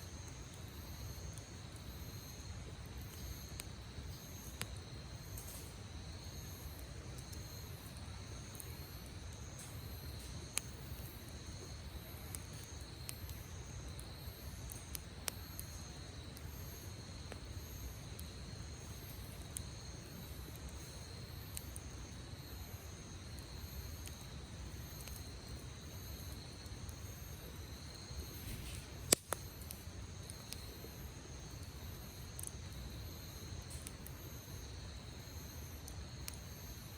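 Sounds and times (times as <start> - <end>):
campfire crackling and popping: 0.0 - 36.9
crickets chirping: 0.0 - 36.9.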